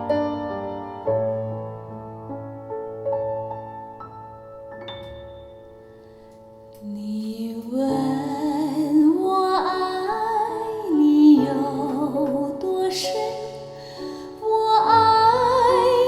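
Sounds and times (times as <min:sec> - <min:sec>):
instrumental accompaniment: 0:00.0 - 0:07.5
person singing: 0:06.8 - 0:16.0.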